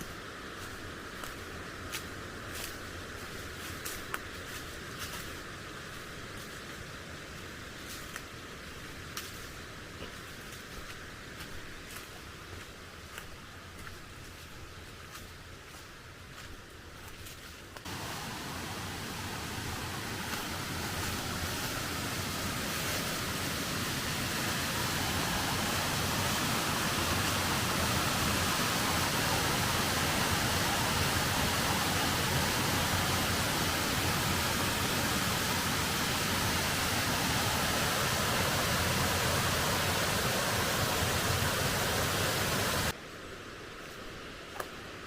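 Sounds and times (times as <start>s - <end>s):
waterfall rushing: 17.8s - 43.0s.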